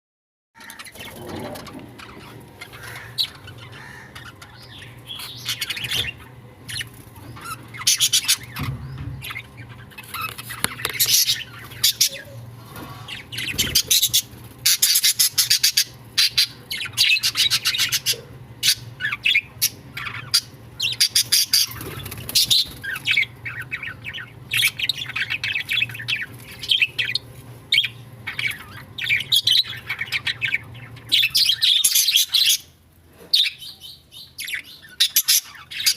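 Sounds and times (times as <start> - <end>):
budgerigars chirping and chattering: 0.6 - 35.9.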